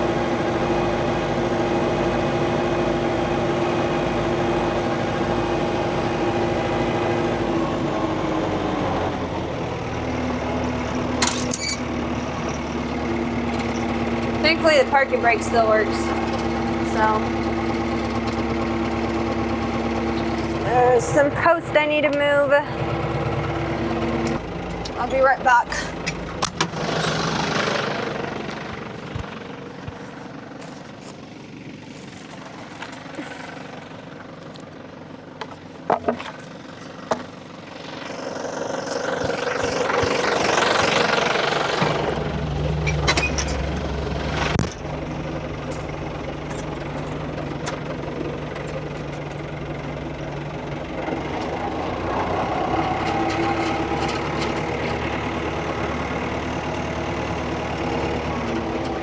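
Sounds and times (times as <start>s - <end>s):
tractor engine running: 0.0s - 59.0s.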